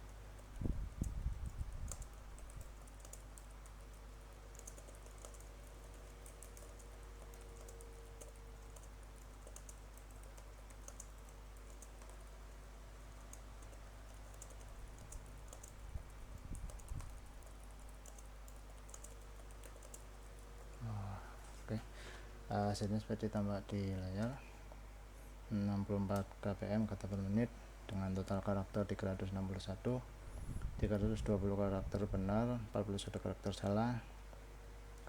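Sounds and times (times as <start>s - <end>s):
muffled keyboard typing: 0.0s - 21.6s, 26.1s - 29.2s
steady low hum: 0.0s - 35.0s.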